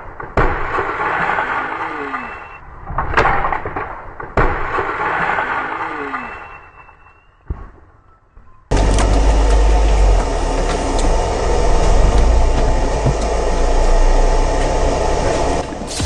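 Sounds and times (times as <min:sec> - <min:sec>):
sharp crack: 0:00.0 - 0:06.5, 0:15.6 - 0:16.0
splintering noise: 0:08.7 - 0:16.0.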